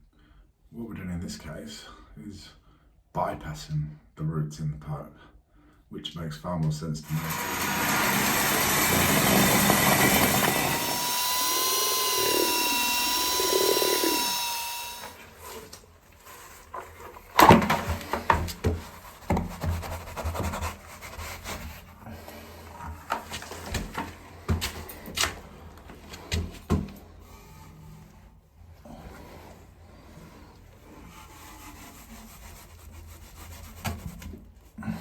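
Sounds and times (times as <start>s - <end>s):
power tool whining: 7.1s - 15.3s.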